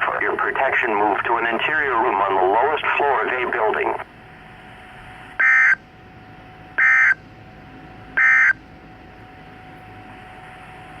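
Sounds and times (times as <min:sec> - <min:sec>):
digital data tone bursts: 0:05.4 - 0:05.8, 0:06.8 - 0:07.2, 0:08.2 - 0:08.6.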